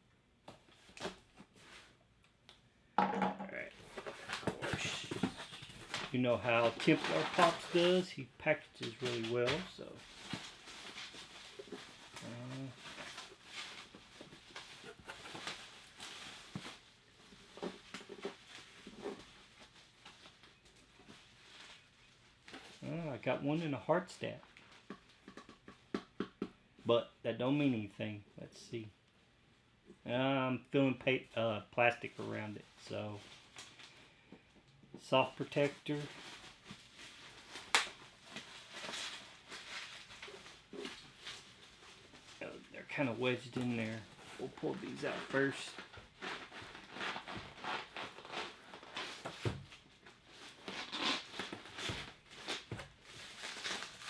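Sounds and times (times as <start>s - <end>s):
cardboard and packing rustling: 3.5s - 23.1s, 35.3s - 54.0s
sharp plastic crackle: 4.0s - 19.1s, 35.5s - 54.0s.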